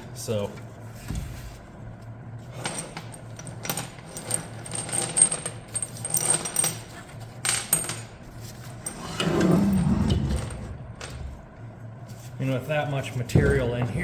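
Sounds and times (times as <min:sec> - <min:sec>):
metal parts clinking and rattling: 0:02.5 - 0:11.4.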